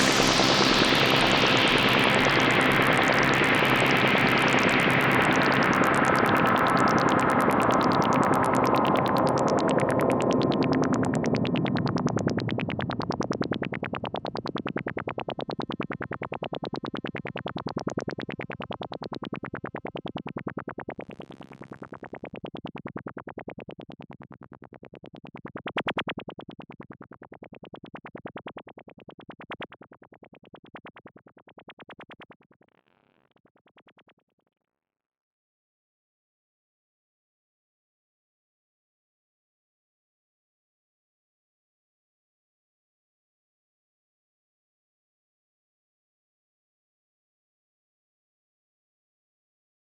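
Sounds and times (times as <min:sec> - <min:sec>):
synthesizer noise music: 0:00.0 - 0:14.3.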